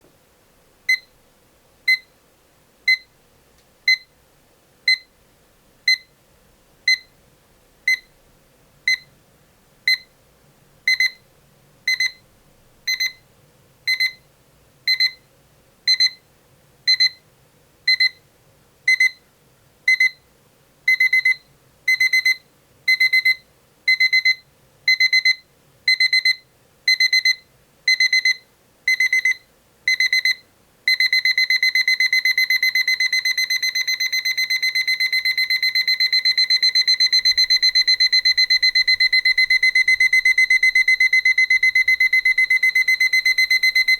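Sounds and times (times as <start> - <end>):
alarm clock beeping: 20.9 - 43.9.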